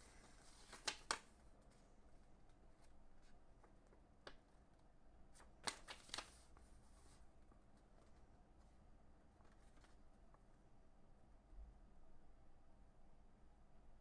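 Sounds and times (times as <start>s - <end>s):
packaging rustling: 0.0s - 1.3s, 5.4s - 6.6s.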